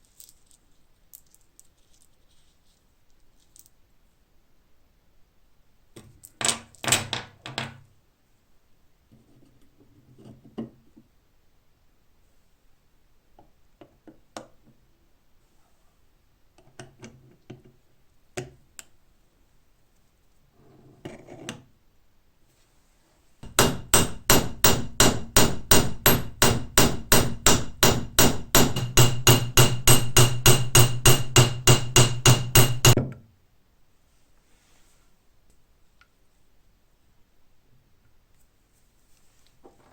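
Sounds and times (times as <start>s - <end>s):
hammer tapping on metal: 23.4s - 33.0s
knocks and clinks of lock parts: 23.4s - 33.1s.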